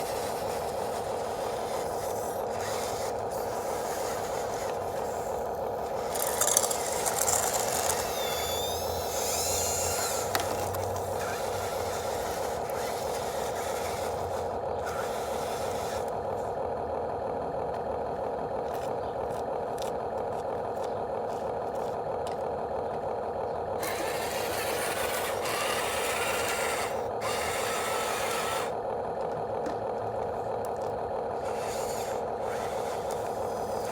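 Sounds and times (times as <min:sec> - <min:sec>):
gears grinding: 0:00.0 - 0:16.5, 0:23.7 - 0:28.8, 0:30.6 - 0:33.9
servo whine: 0:00.0 - 0:16.6, 0:23.8 - 0:28.8, 0:30.8 - 0:33.9
small electric motors whirring: 0:00.0 - 0:17.1, 0:22.8 - 0:33.9.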